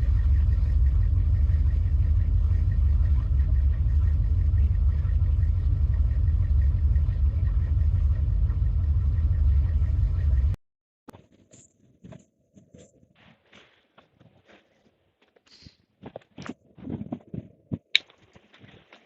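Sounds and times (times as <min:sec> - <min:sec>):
car engine idling: 0:00.0 - 0:10.6.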